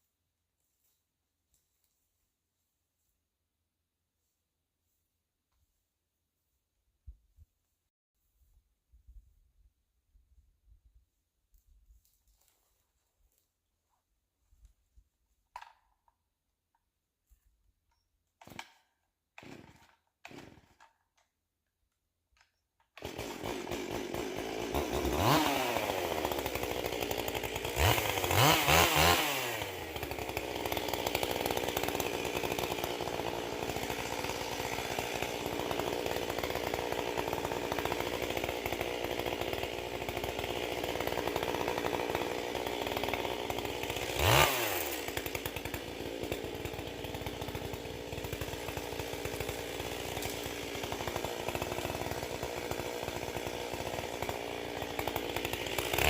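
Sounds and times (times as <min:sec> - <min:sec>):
chainsaw revving: 0:19.4 - 0:20.9, 0:23.0 - 0:56.0.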